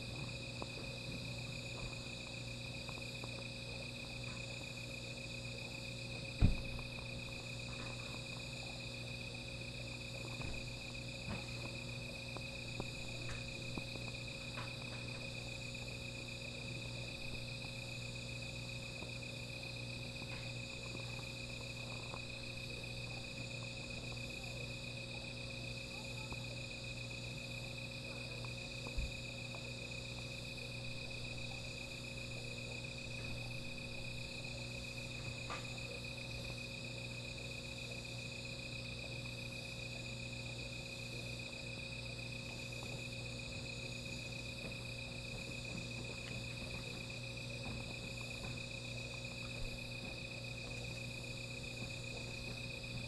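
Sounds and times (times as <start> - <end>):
crickets trilling: 0.0 - 53.0
low steady hum: 0.0 - 53.0
faint ticks: 0.1 - 9.2, 9.8 - 33.5
low thump: 6.4 - 6.8.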